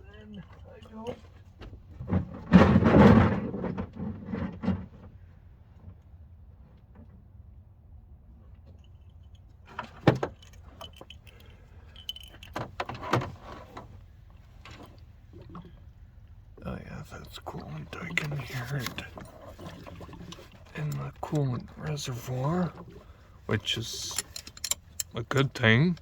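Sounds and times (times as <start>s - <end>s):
metal tools clinking: 8.8s - 13.6s, 23.5s - 26.0s.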